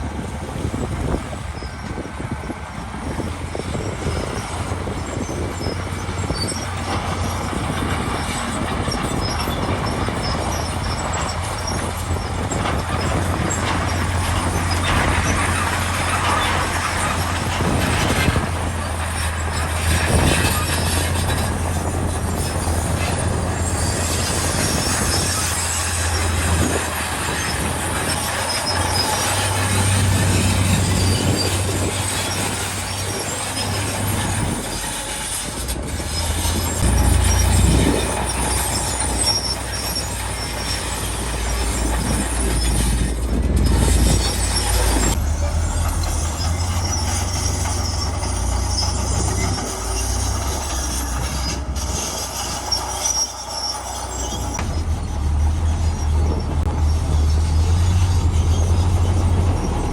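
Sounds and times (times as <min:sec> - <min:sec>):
diesel machinery engine hum: 0:00.0 - 0:59.9
grinding and scraping: 0:00.0 - 0:59.9.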